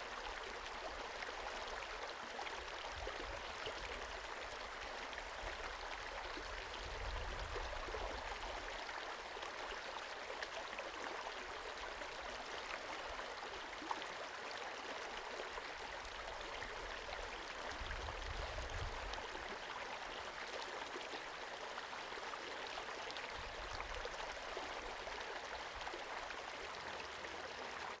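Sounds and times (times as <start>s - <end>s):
creek babbling: 0.0s - 28.0s.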